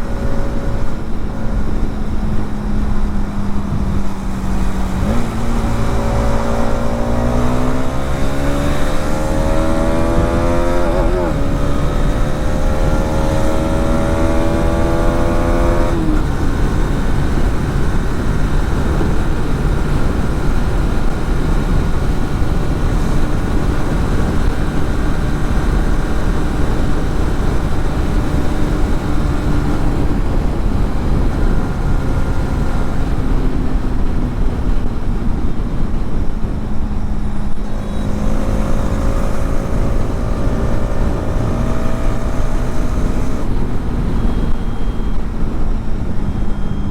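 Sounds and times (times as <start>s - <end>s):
motorcycle engine revving: 0.0s - 46.9s
wind rumble on microphone: 0.0s - 46.9s.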